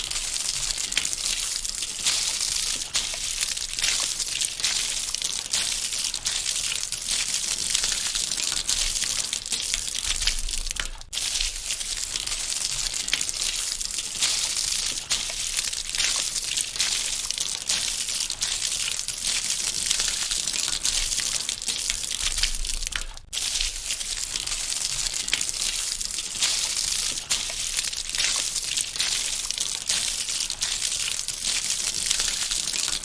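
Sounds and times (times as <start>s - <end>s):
water spattering onto metal: 0.0s - 33.0s.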